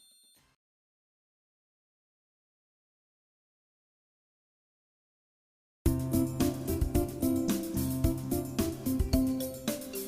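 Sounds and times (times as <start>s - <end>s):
plucked background music: 5.9s - 10.0s.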